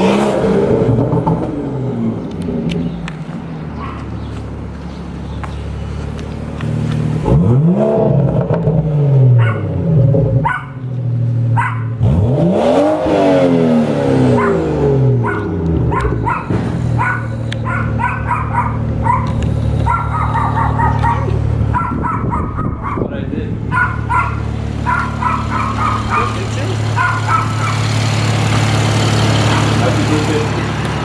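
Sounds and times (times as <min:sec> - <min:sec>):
car engine revving and idling: 0:00.0 - 0:31.0
dog barking: 0:03.8 - 0:04.1, 0:09.4 - 0:09.8, 0:10.4 - 0:10.8, 0:11.5 - 0:12.0, 0:14.3 - 0:23.1, 0:23.7 - 0:27.8.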